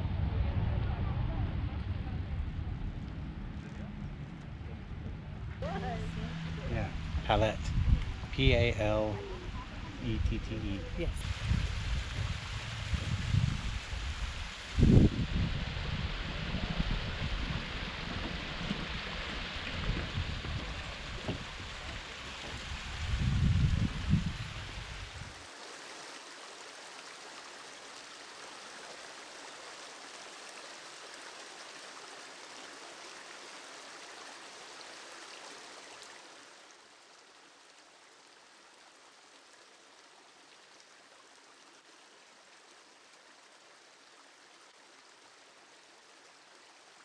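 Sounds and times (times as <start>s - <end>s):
low rumble: 0.0s - 8.5s
running water hiss: 11.0s - 47.0s.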